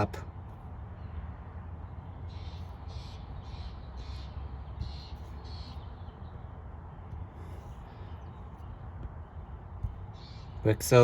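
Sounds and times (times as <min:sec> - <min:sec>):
low outdoor rumble: 0:00.0 - 0:11.0.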